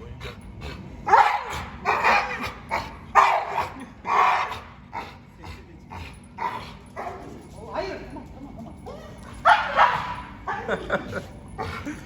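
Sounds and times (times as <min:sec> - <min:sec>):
dog barking: 0:01.1 - 0:05.1, 0:09.4 - 0:10.8.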